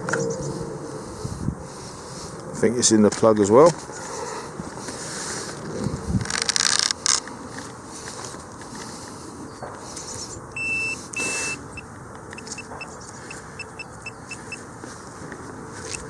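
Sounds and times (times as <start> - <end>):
metal detector beeping: 10.5 - 14.7.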